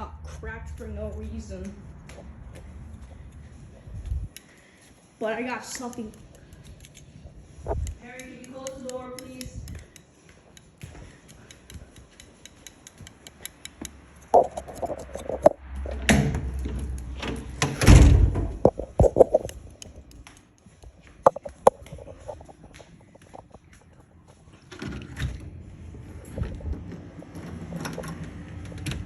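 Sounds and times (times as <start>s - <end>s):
clicks and knocks of objects handled: 5.7s - 17.8s, 18.5s - 25.5s.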